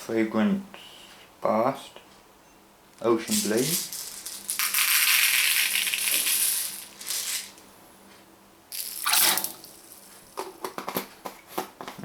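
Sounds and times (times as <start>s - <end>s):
liquid pouring and splashing: 8.8s - 9.8s.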